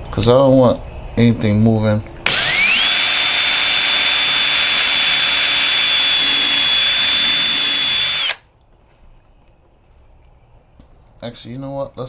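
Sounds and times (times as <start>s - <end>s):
power drill drilling into plastic: 2.3s - 8.4s.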